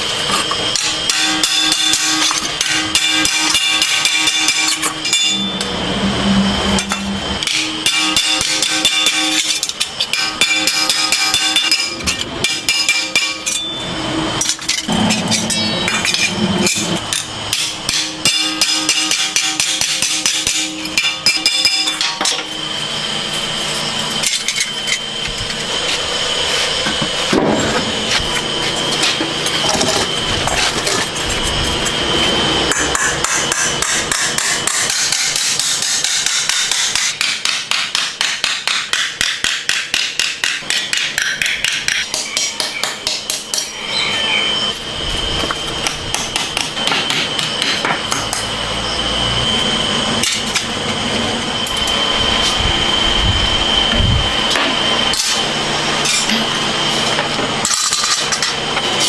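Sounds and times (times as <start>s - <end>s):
hammer striking metal: 0.7s - 22.6s, 32.7s - 44.1s, 45.8s - 48.5s.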